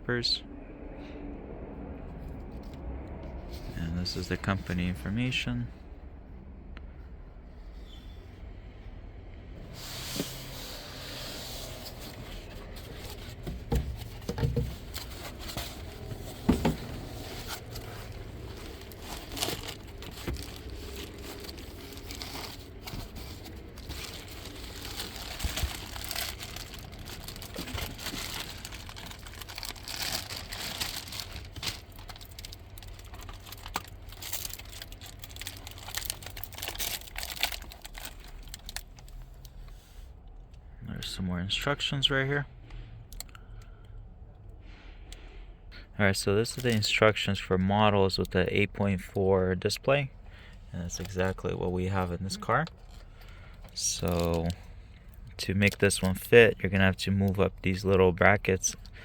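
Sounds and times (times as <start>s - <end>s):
low steady hum: 0.0s - 59.0s
paper rustling and crinkling: 10.2s - 39.1s, 53.7s - 54.6s.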